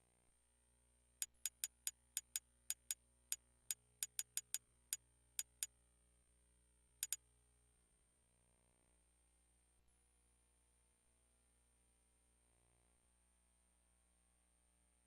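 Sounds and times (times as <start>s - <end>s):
faint sharp clicks: 1.2s - 3.0s, 4.0s - 4.6s.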